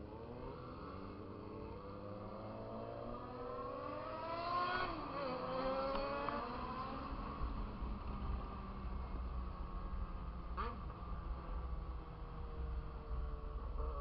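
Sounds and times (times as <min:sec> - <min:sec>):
motorcycle engine accelerating: 0:00.0 - 0:14.0.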